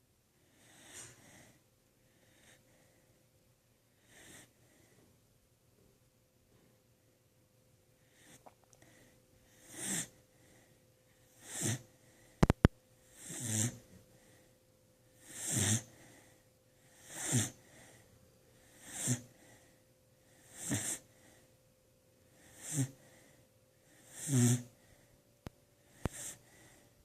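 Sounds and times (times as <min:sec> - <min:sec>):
person snoring: 0:13.2 - 0:13.8, 0:15.2 - 0:15.9, 0:17.0 - 0:17.6, 0:22.5 - 0:23.0, 0:24.0 - 0:24.7, 0:26.0 - 0:26.4.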